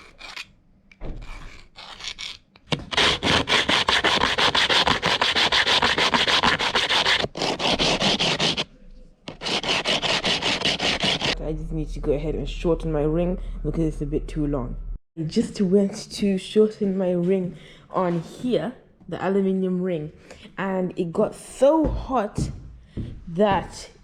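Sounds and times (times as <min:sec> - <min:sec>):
metal tube scraping on abrasive: 0:00.0 - 0:00.5.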